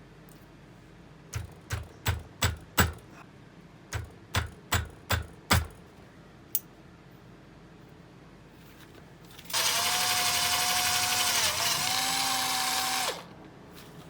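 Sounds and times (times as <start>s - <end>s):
hammer tapping: 1.4s - 3.1s, 4.0s - 5.8s.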